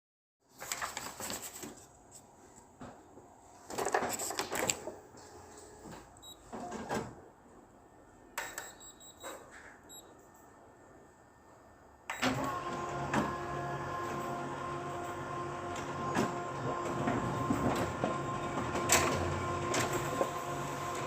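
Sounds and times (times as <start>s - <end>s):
photocopier clunks and rustles: 3.6s - 7.2s, 12.2s - 21.0s.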